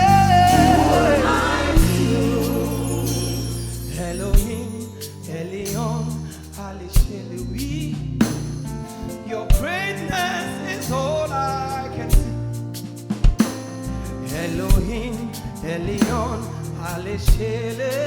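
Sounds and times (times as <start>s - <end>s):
drum hits: 0.0s - 4.6s
sustained low bass notes: 0.0s - 6.2s, 13.9s - 17.7s.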